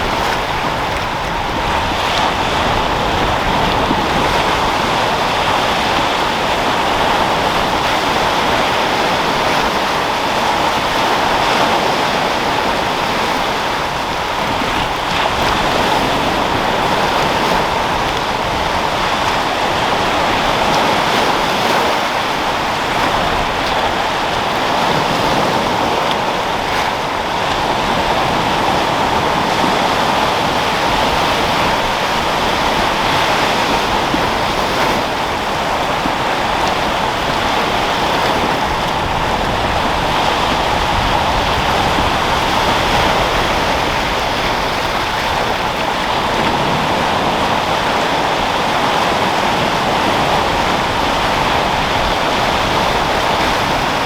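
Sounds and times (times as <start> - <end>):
sea waves washing: 0.0 - 54.0
wind: 0.0 - 54.0.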